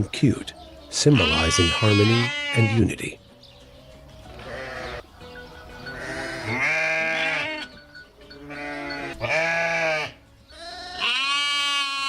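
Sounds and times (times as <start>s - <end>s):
lambs bleating: 1.0s - 3.0s, 4.4s - 5.0s, 5.9s - 12.0s.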